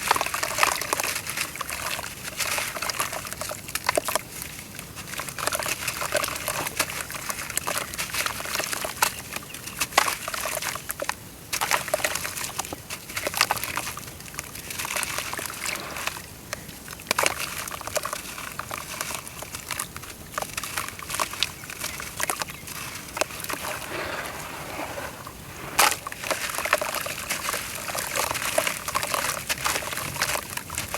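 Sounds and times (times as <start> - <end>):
dirt crumbling in water: 17.2 - 30.9
water sloshing: 23.1 - 29.3.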